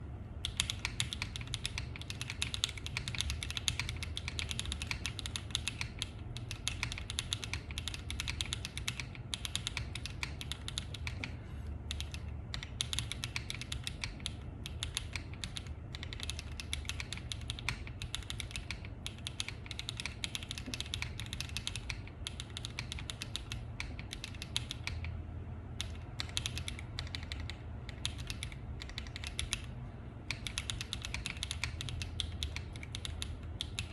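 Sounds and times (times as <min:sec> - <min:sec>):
typing on mechanical keyboard: 0:00.4 - 0:33.9.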